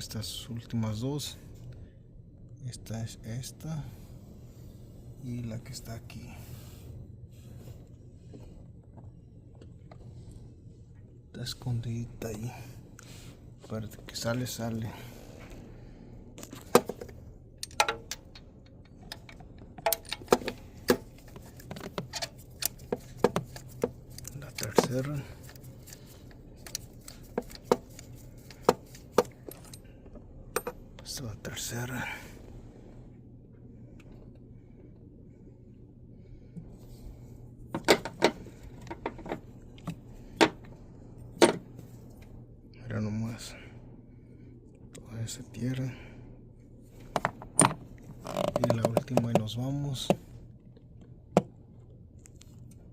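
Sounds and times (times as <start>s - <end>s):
plastic and metal parts clicking: 16.6s - 29.8s.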